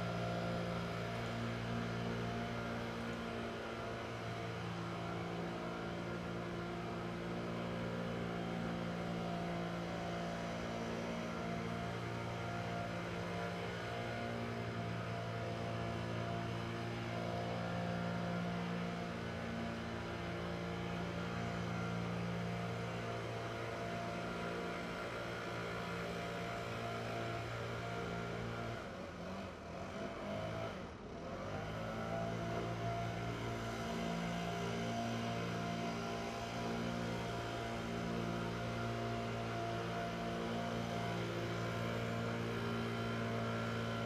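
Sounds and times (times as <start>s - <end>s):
leaf blowers droning: 0.0s - 44.0s.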